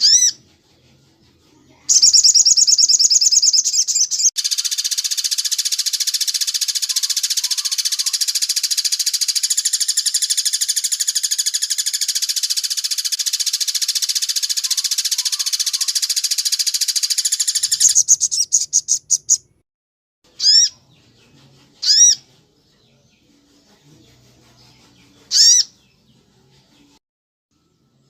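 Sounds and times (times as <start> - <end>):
songbird trilling: 0.0 - 0.4, 1.9 - 19.5, 20.4 - 20.8, 21.8 - 22.2, 25.3 - 25.7
bird call notes: 12.2 - 19.4.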